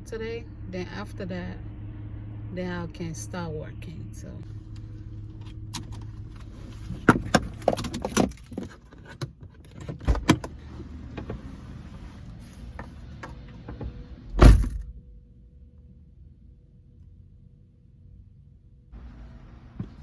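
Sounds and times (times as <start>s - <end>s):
low steady hum: 0.0s - 20.0s
car keys jangling: 5.3s - 10.6s.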